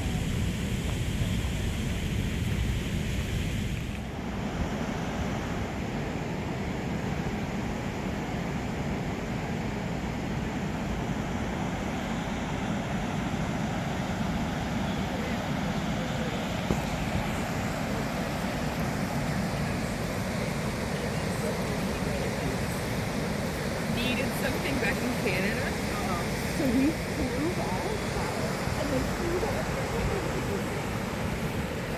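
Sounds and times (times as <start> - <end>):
waterfall roaring: 11.5 - 31.9.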